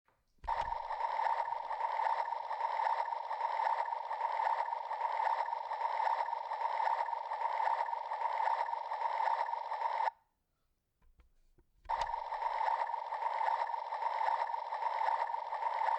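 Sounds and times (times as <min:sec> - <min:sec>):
small electric motor running: 0:00.4 - 0:10.1, 0:11.9 - 0:15.9.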